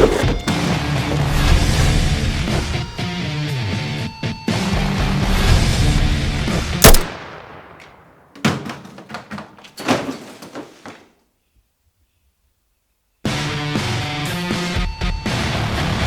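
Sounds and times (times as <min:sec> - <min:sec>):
thuds: 0:00.0 - 0:03.1, 0:07.8 - 0:11.1
loud gunshot: 0:06.8 - 0:07.8.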